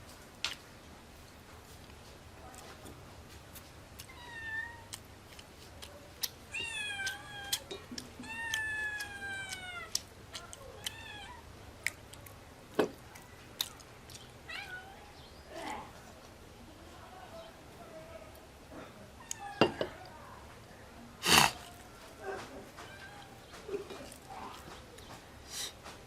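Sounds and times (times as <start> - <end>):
cat meowing: 4.0 - 4.9, 6.5 - 7.6, 8.2 - 10.0, 10.7 - 11.4, 14.5 - 15.1.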